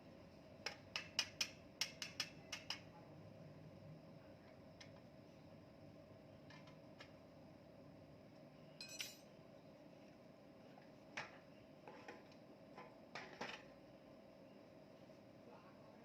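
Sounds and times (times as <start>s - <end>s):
faint steady hum: 0.0s - 16.0s
metal tools clinking: 8.8s - 9.3s.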